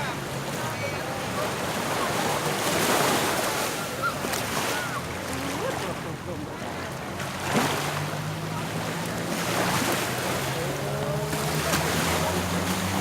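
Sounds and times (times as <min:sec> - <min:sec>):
waves washing onto beach: 0:00.0 - 0:13.0
low engine hum: 0:04.1 - 0:13.0.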